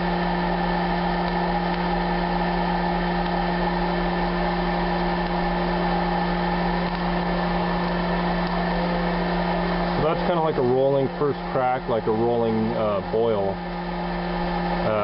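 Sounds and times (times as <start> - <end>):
popcorn popper fan humming: 0.0 - 15.0
coffee beans cracking and popping: 6.8 - 7.1.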